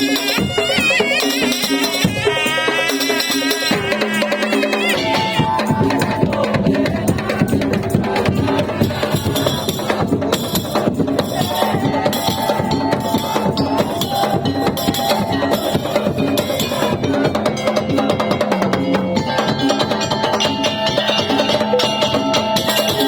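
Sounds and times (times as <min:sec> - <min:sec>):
slit drums and drums: 0:00.0 - 0:23.0
held melodic tones: 0:03.7 - 0:09.1.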